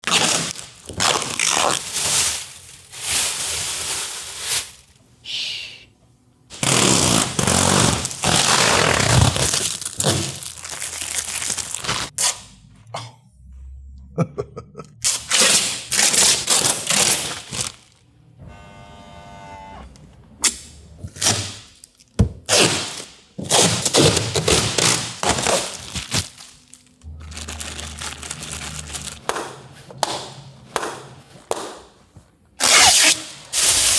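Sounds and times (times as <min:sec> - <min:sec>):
low hums: 0:12.4 - 0:15.2, 0:26.9 - 0:31.1
short pitched buzz: 0:18.4 - 0:19.9.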